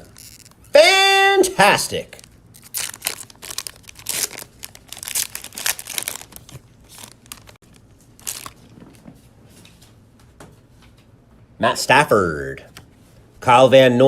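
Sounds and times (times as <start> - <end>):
wrapper tearing and crinkling: 0.0 - 0.7, 2.1 - 8.7.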